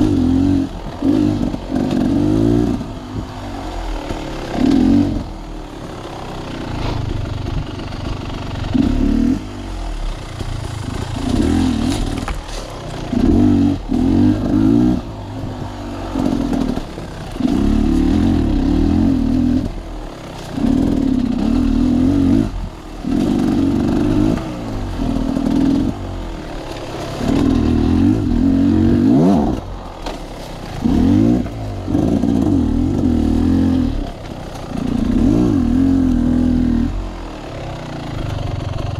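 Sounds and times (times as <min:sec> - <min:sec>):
sawmill machinery engine: 0:00.0 - 0:38.9.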